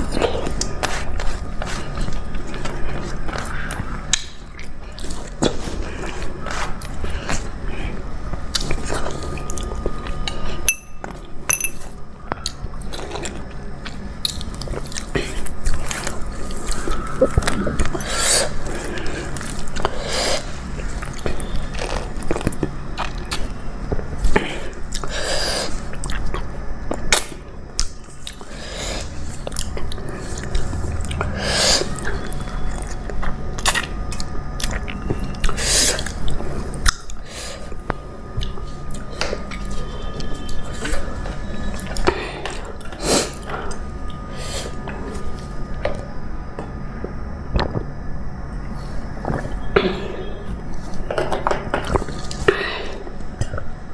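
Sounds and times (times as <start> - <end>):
person chewing close up: 0.0 - 11.4, 12.3 - 25.1, 25.7 - 28.6, 29.2 - 45.0.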